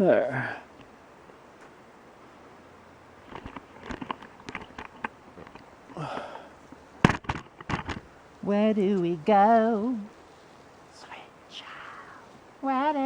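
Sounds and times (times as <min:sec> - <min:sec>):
person exhaling: 0:06.0 - 0:06.6.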